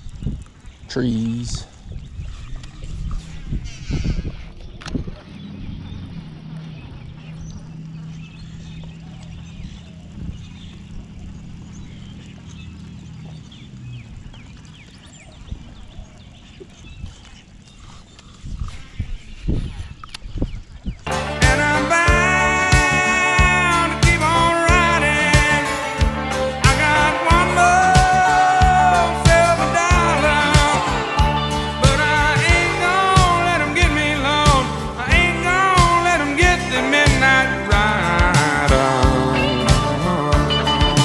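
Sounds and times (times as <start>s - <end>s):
birds chirping: 0.0s - 41.0s
low motor hum: 1.9s - 17.9s, 21.1s - 41.0s
person singing: 21.1s - 41.0s
steady drum beat: 21.1s - 41.0s.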